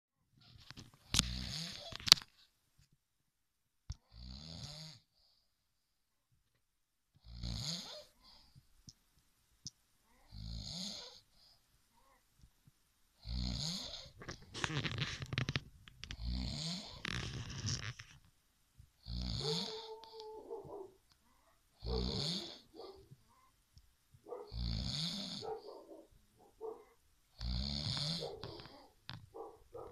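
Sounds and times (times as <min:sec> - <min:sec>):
people snoring: 0:01.2 - 0:02.0, 0:07.2 - 0:08.2, 0:10.3 - 0:11.2, 0:13.2 - 0:15.3, 0:16.1 - 0:17.8, 0:19.0 - 0:20.8, 0:21.8 - 0:23.0, 0:24.3 - 0:26.0, 0:27.4 - 0:29.9.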